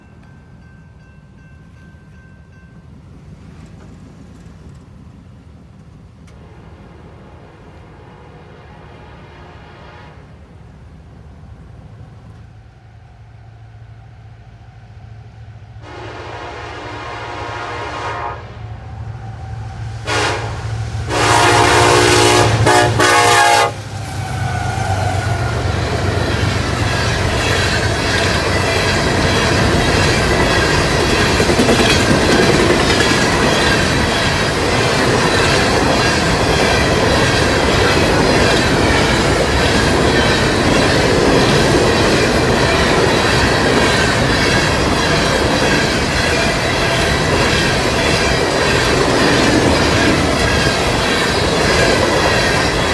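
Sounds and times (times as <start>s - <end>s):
locomotive air horn blasts: 6.4s - 10.4s, 15.8s - 18.6s, 20.0s - 25.7s.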